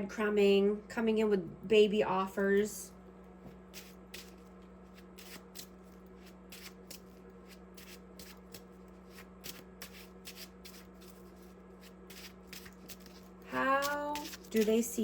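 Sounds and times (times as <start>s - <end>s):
cards being shuffled: 3.8s - 15.0s.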